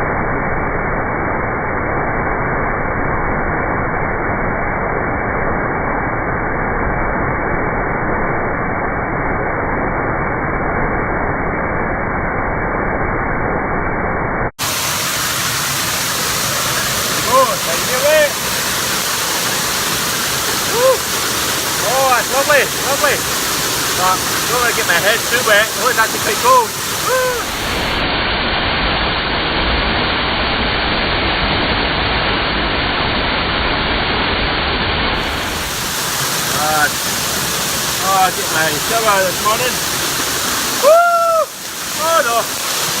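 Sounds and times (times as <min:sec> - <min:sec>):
waterfall rushing: 0:14.6 - 0:43.0.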